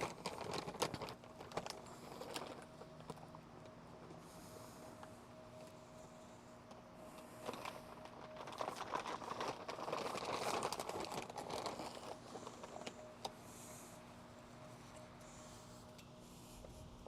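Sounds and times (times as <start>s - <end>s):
rustling crinkling clicks: 0.0s - 3.8s, 7.2s - 13.4s.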